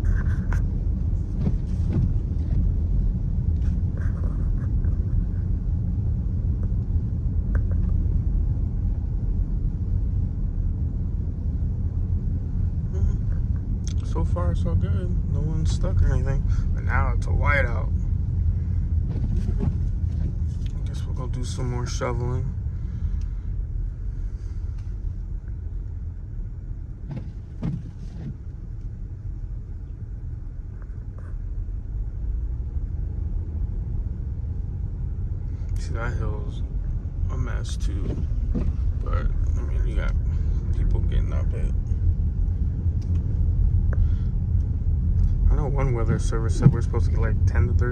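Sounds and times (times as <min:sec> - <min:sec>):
car driving on snowy road: 0:00.0 - 0:47.9.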